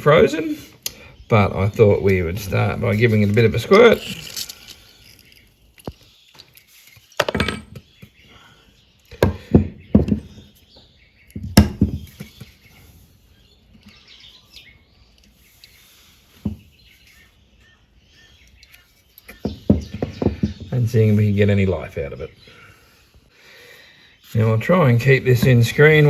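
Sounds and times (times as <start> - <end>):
birds chirping: 0.0 - 26.0
lubricant squirting: 3.0 - 6.1
metal knocks and clunks: 7.2 - 7.8.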